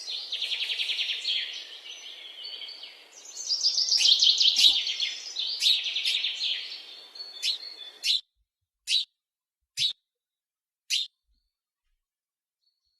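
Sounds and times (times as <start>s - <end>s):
birds chirping and trilling: 0.0s - 8.3s, 8.9s - 9.1s, 9.8s - 10.0s, 10.9s - 11.5s.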